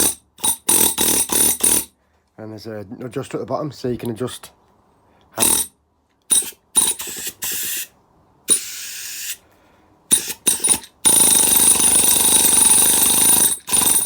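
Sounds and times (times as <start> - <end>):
pneumatic air hammer: 0.0 - 1.9, 6.3 - 7.9, 8.5 - 9.4, 10.1 - 14.0.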